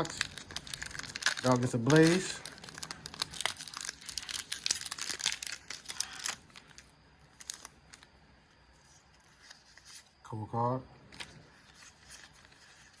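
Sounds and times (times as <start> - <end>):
foil wrapper crinkling and tearing: 0.0 - 8.2.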